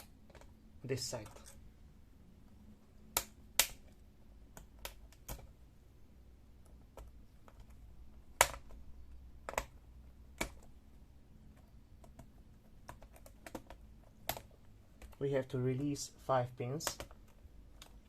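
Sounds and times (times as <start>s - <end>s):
sharp plastic clicks: 3.1s - 5.6s, 6.6s - 8.8s, 9.4s - 10.8s.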